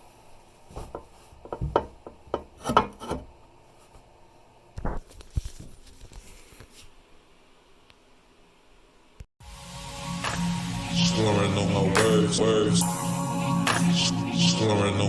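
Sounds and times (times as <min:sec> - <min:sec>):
toilet tank lid clunking and scraping: 0:00.7 - 0:03.4.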